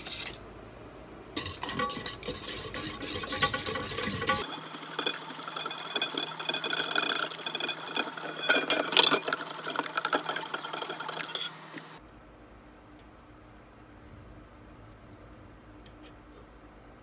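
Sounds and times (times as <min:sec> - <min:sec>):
electric mixer whisk rattling: 0:01.4 - 0:12.0.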